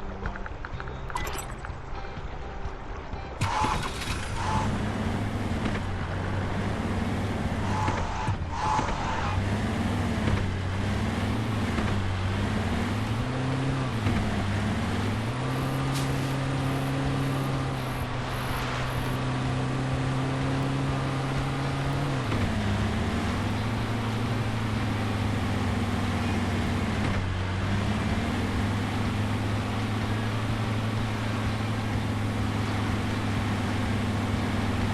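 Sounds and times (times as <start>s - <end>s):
constant rumbling noise: 0.0s - 34.9s
engine revs rising and falling: 3.4s - 34.9s.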